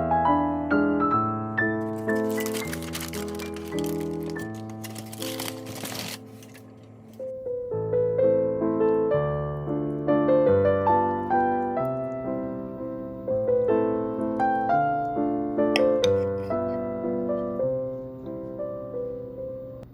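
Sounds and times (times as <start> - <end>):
gentle piano music: 0.0 - 19.9.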